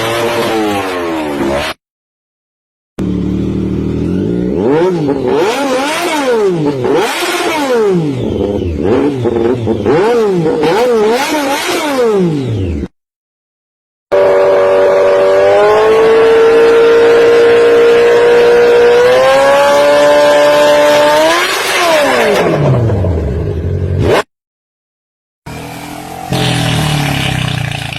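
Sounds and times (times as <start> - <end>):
engine running: 25.5 - 27.9.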